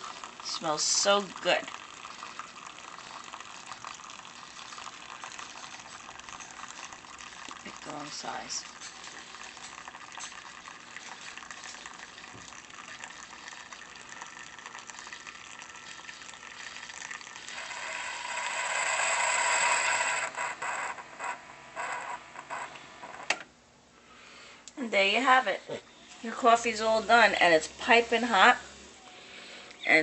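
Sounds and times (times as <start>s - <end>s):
coffee maker pump hissing: 0.0s - 23.0s
coffee maker sputtering: 0.0s - 23.4s.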